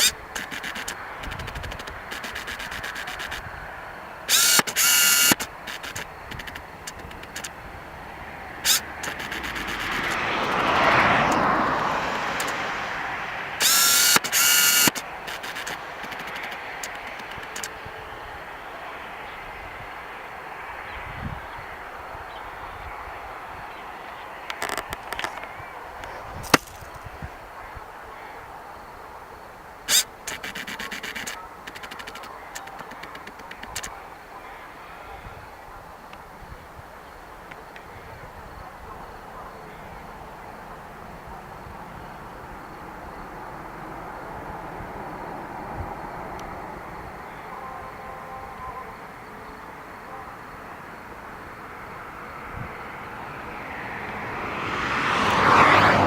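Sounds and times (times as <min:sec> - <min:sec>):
mechanical clicking and whirring: 0:00.0 - 0:03.5, 0:04.3 - 0:07.6, 0:08.6 - 0:11.5, 0:12.3 - 0:12.7, 0:13.5 - 0:17.8, 0:29.9 - 0:33.9
jet airliner passing: 0:00.0 - 0:31.7, 0:51.0 - 0:56.0
faint background noise: 0:00.0 - 0:56.0.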